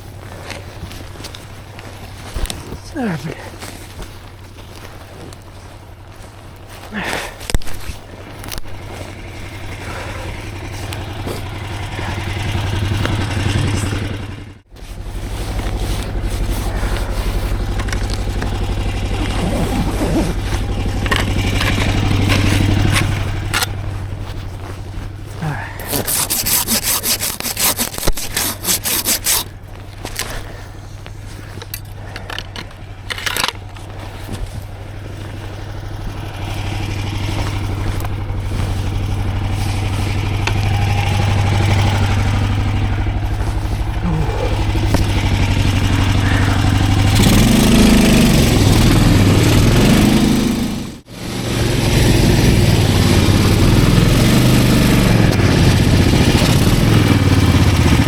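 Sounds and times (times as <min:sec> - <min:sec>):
snowmobile engine running: 0:00.0 - 0:58.0
rapid rasping scrapes: 0:06.6 - 0:50.5.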